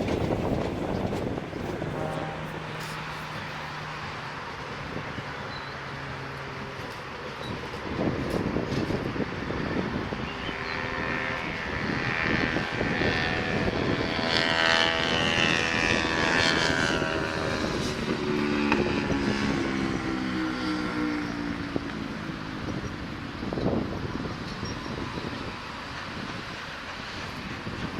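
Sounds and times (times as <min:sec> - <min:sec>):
steam train wagons rumbling past: 0:00.0 - 0:27.9
low tone: 0:01.0 - 0:03.8.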